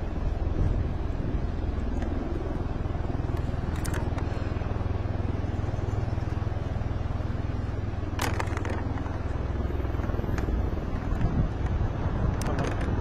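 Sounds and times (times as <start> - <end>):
helicopter rotors beating: 0.0 - 13.0.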